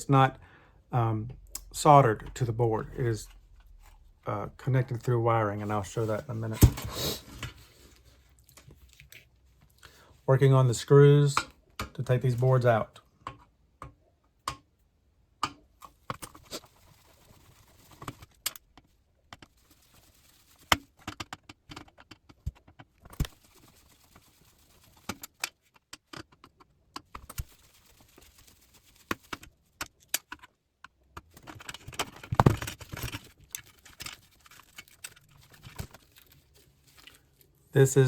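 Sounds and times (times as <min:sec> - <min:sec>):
clatter of parts being handled: 0:31.2 - 0:37.5.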